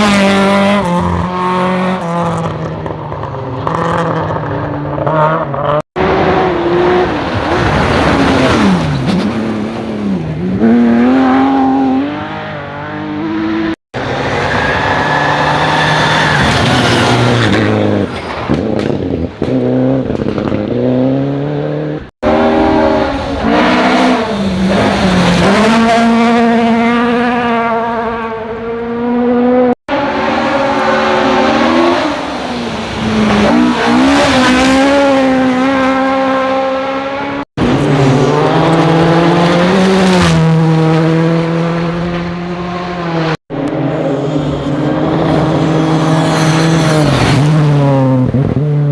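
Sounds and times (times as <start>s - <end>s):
rally car engines accelerating: 0.0s - 48.9s.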